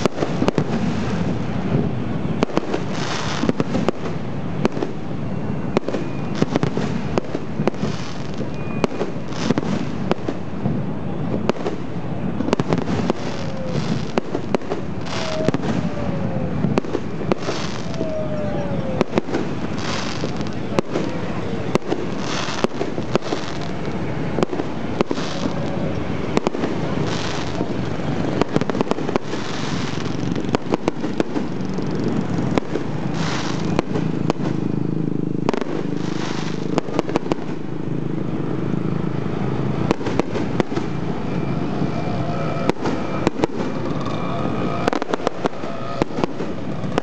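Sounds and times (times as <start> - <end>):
fireworks hissing: 0.0 - 10.8, 11.4 - 37.7
fireworks bangs and pops: 0.0 - 38.4, 39.1 - 47.0
low background rumble: 0.0 - 47.0.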